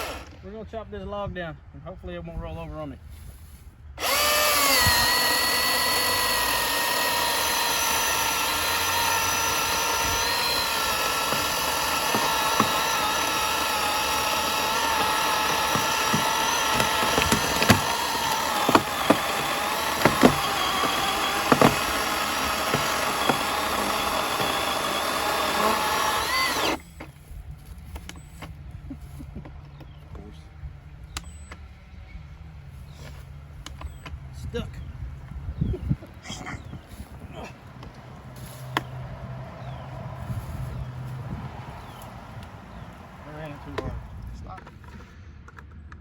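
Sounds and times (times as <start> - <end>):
chainsaw cutting log: 0.0 - 0.4, 4.0 - 27.1, 36.8 - 44.2
sharp snaps of wood: 38.6 - 39.0.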